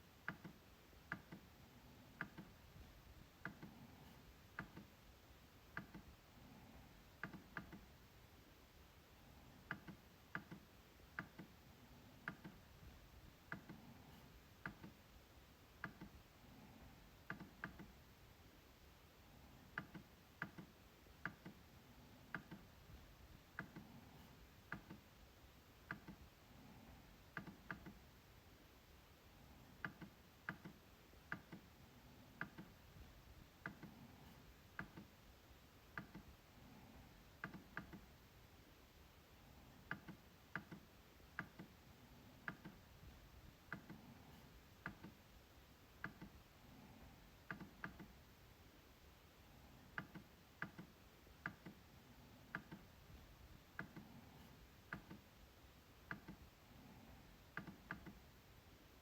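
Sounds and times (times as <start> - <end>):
trackpad clicking: 19.8 - 21.6.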